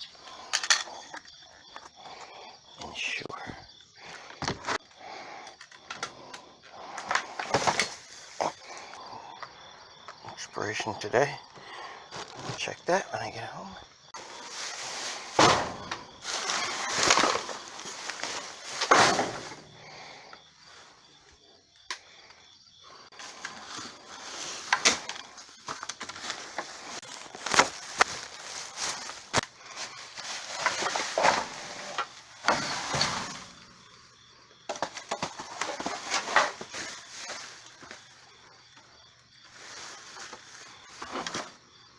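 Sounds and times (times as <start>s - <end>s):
rustling and handling noise: 7.0s - 9.0s, 12.1s - 19.7s, 23.1s - 34.1s, 34.7s - 41.7s.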